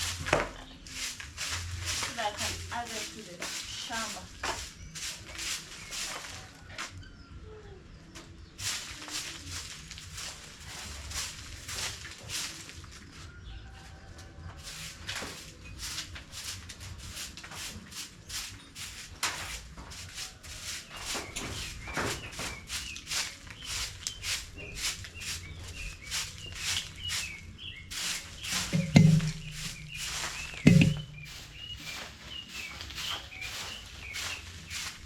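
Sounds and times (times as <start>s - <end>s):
scraping manure off floor: 0.0s - 7.0s, 8.6s - 13.1s, 13.7s - 35.0s
birds chirping: 0.0s - 14.0s, 14.6s - 35.0s
loud low thuds: 28.4s - 31.7s.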